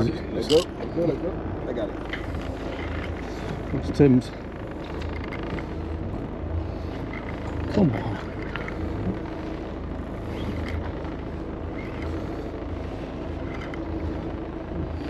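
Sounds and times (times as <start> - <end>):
boat engine running: 0.0 - 15.0.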